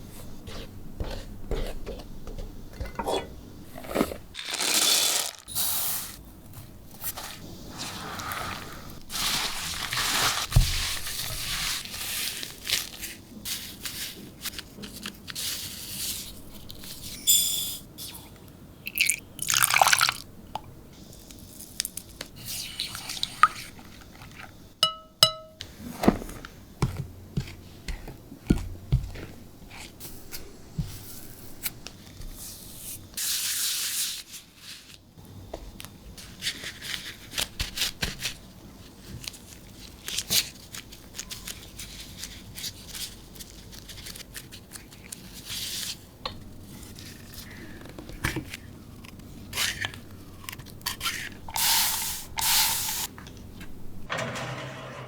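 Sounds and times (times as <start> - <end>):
packaging rustling: 4.4 - 5.5, 8.9 - 15.4
utensils knocking and clinking: 24.8 - 25.6
hiss: 51.6 - 53.1.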